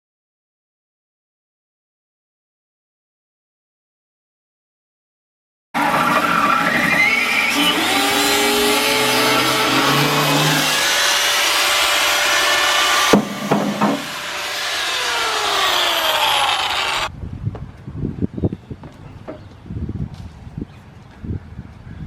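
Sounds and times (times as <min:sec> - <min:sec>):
angle grinder cutting steel: 0:05.8 - 0:17.1.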